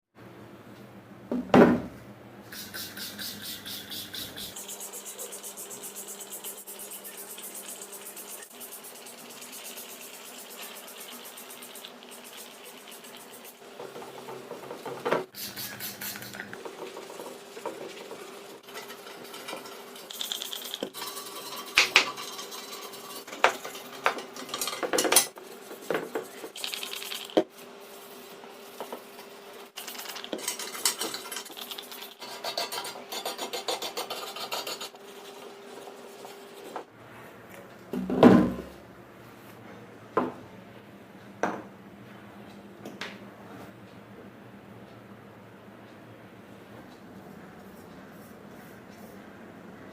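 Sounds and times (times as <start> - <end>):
metal tools clinking and scraping: 20.9 - 25.4, 29.9 - 31.6.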